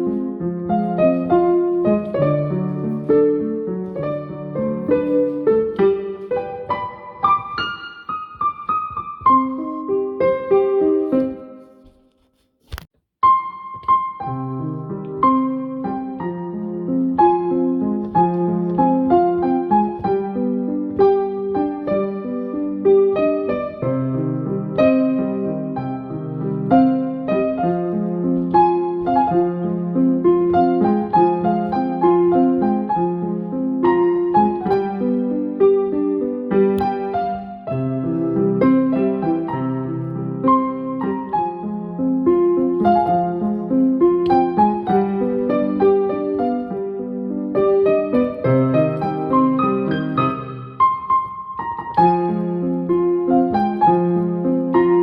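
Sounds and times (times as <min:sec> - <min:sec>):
piano music: 0:00.0 - 0:12.2, 0:13.2 - 0:55.0.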